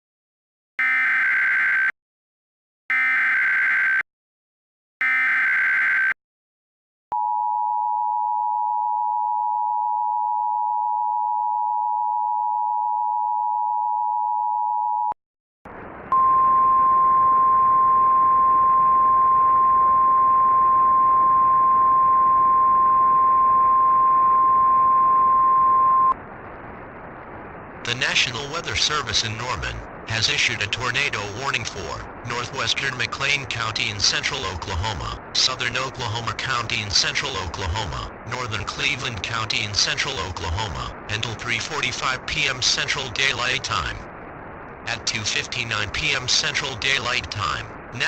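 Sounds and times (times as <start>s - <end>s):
warning alarm tone: 0.8s - 2.0s, 2.9s - 4.0s, 5.0s - 6.2s, 16.1s - 26.2s
radio static: 27.8s - 44.2s, 44.8s - 48.0s.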